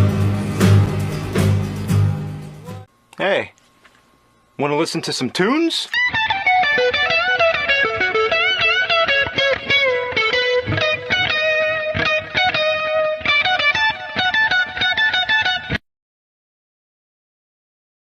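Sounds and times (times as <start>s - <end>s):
distorted electric guitar melody: 0.0s - 2.9s, 6.0s - 15.8s.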